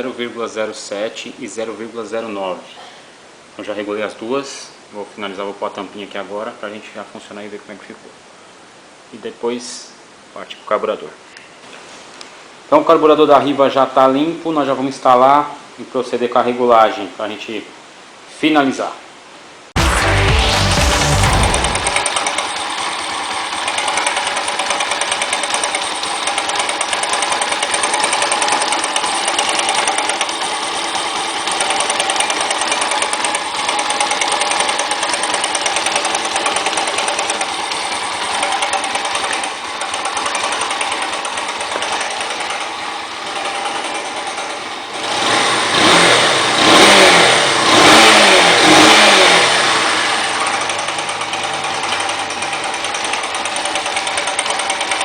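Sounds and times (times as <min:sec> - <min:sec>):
engine revving: 0:19.8 - 0:22.2, 0:45.0 - 0:54.5
motorcycle engine knocking: 0:23.6 - 0:44.7, 0:50.3 - 0:55.0.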